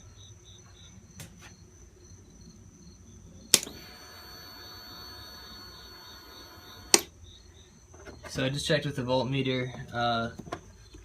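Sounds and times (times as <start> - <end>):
sharp electrical click: 3.5 - 7.1
electric fuel pump whine: 3.5 - 7.2.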